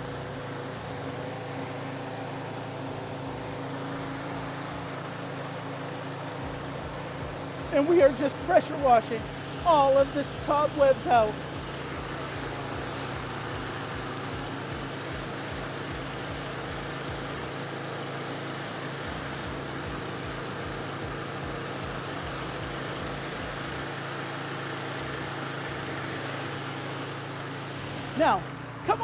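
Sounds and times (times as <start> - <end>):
pressure washer engine hum: 0.0 - 29.0
water jet hissing: 0.0 - 29.0.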